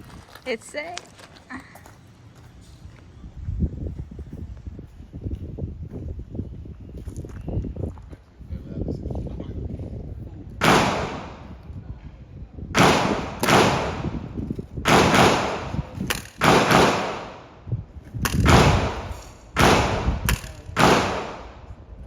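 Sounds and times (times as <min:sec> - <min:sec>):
gunshots with long echo: 0:10.6 - 0:11.6, 0:12.8 - 0:17.6, 0:18.4 - 0:21.7.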